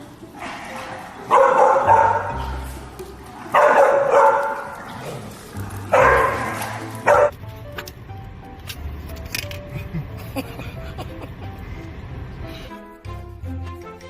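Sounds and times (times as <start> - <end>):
dog barking loudly: 1.1 - 2.5, 3.5 - 5.0, 5.8 - 7.3.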